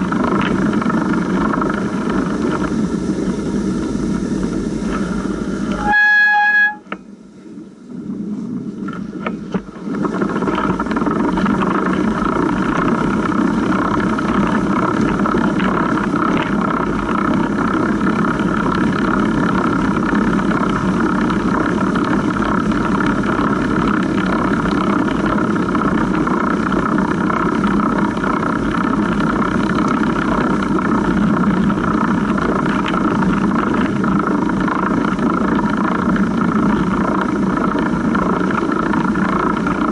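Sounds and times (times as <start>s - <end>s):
bike chain running over pulley: 0.0s - 3.6s, 9.7s - 39.9s
tyres rolling through snow: 0.0s - 5.7s, 7.5s - 39.9s
short pitched beep: 5.7s - 6.9s.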